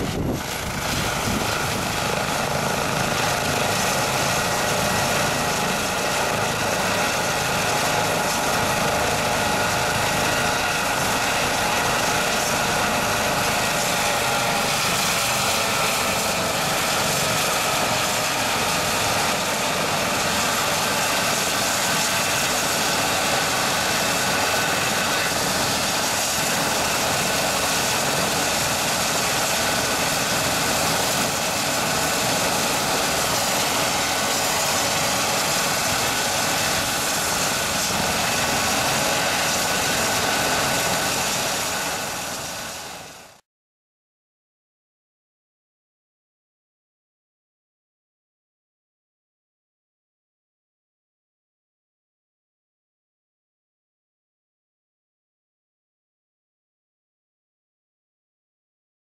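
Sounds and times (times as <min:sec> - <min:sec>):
helicopter turbine whine: 0:00.0 - 0:43.4.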